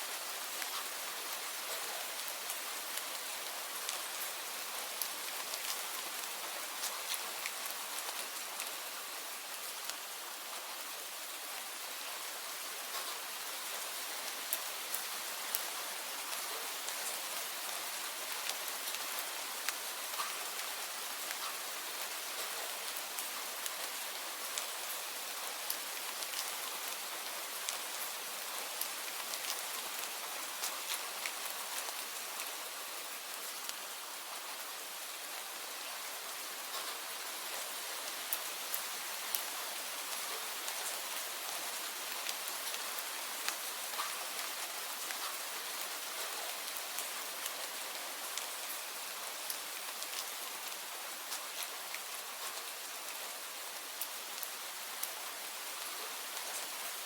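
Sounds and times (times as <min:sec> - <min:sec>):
steady rain hiss: 0:00.0 - 0:57.0
raindrops ticking close by: 0:00.1 - 0:10.7, 0:11.9 - 0:57.0.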